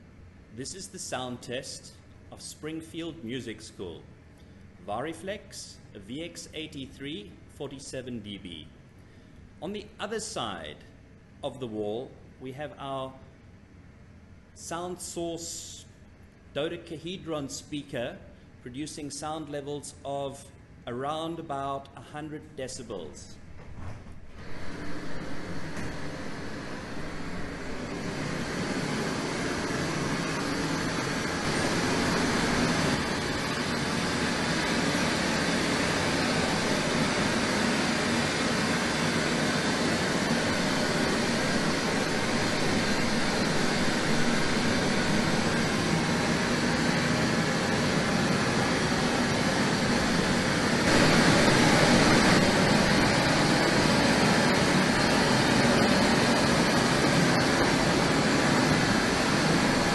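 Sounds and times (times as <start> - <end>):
loudspeaker test noise hiss: 0.0 - 4.2, 4.8 - 8.8, 9.6 - 13.4, 14.5 - 23.5, 25.0 - 59.9.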